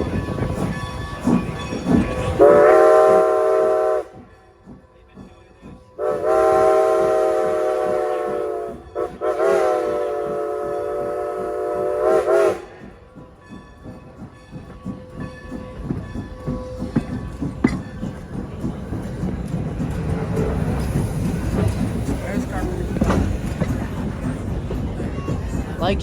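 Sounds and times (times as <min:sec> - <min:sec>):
steam locomotive whistle blasts: 0:02.4 - 0:04.2, 0:06.0 - 0:12.8.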